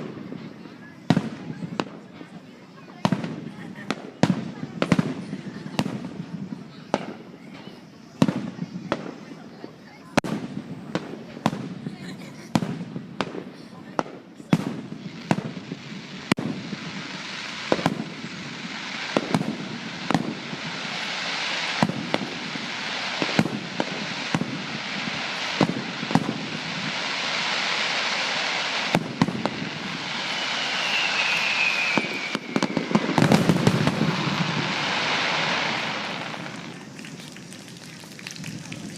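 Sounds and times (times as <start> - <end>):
fireworks banging: 0.0 - 38.9
fireworks crackling hiss: 0.0 - 38.9
falling firework whistle: 22.9 - 38.9.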